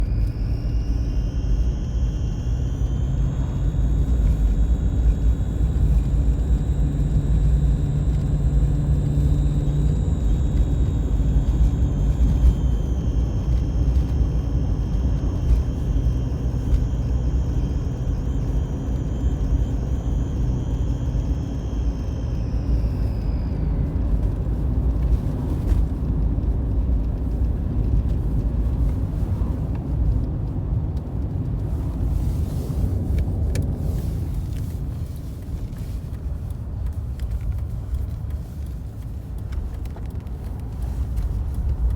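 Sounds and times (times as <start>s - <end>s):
high thin engine whistle: 0.0s - 24.5s
low rumble of engine and road: 0.0s - 41.9s.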